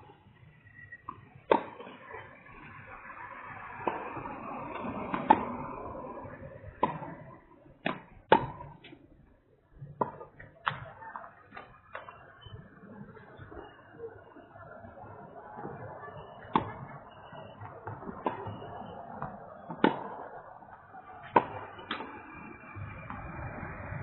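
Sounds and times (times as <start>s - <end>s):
tennis balls bouncing on court: 0.8s - 24.0s
rackets striking tennis balls: 1.1s - 2.3s, 4.7s - 5.8s, 6.4s - 9.0s, 9.8s - 12.2s, 16.4s - 20.4s, 21.1s - 22.1s.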